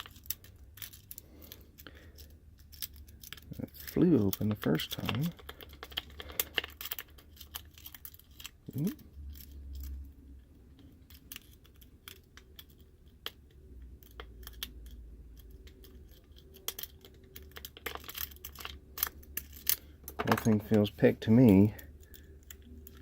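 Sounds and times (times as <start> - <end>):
lock picks clicking and scraping: 0.0 - 23.0.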